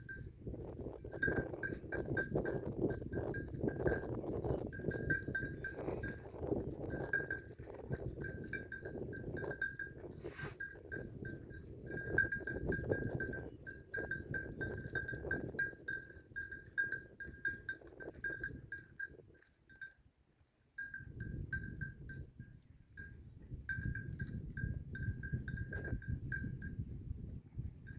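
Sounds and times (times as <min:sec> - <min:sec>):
animal bells clinking: 0:00.0 - 0:27.9.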